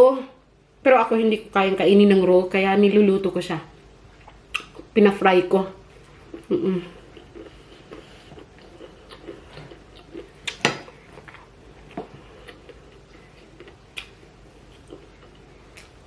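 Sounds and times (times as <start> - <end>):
chewing: 4.1 - 4.9, 5.9 - 16.0.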